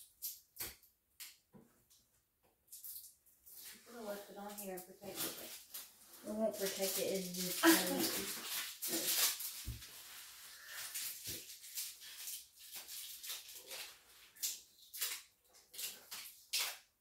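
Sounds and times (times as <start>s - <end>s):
rustling and scraping handling: 2.8s - 14.4s.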